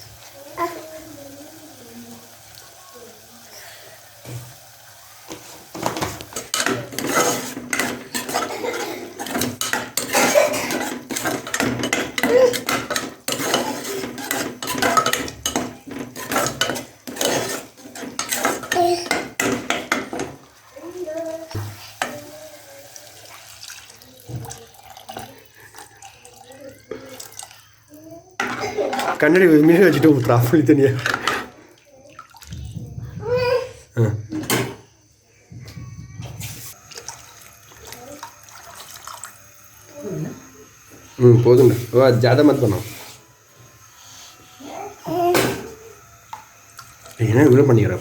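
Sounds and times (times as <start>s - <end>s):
metal utensil scraping a pot: 5.7s - 20.4s, 28.4s - 31.6s.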